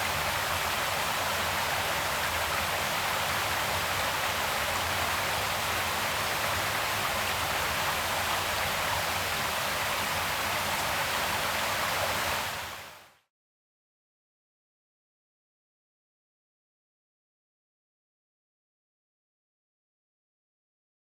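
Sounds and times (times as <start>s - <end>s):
creek water flowing: 0.0s - 12.7s.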